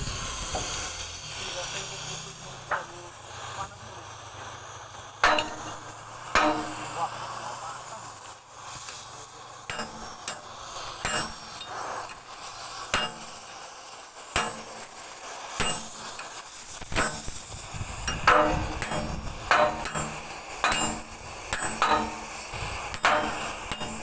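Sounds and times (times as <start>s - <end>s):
cutting torch hissing: 0.0s - 24.0s
sharp metal knocks: 2.7s - 3.0s, 5.2s - 7.0s, 9.7s - 12.2s, 12.9s - 13.5s, 14.4s - 15.0s, 15.6s - 24.0s.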